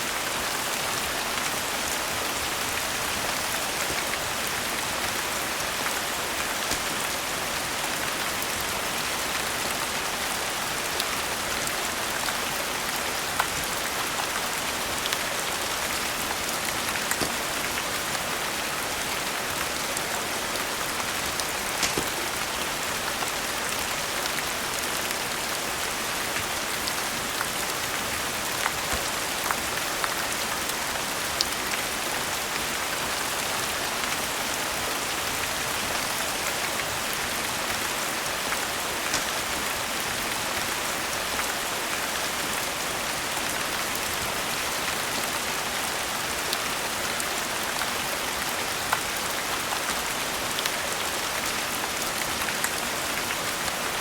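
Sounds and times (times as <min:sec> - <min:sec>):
steady rain: 0:00.0 - 0:54.0
wood fire crackling: 0:15.9 - 0:18.4, 0:20.8 - 0:23.2.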